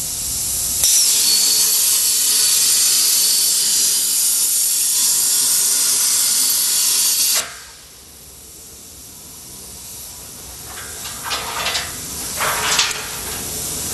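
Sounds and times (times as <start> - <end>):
air hissing: 0.0 - 13.9
plasma cutter arc hissing: 0.0 - 13.9.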